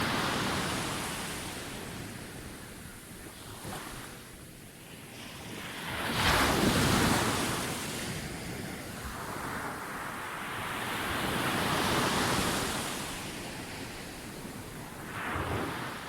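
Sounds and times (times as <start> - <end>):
sea waves breaking on beach: 5.1 - 16.0.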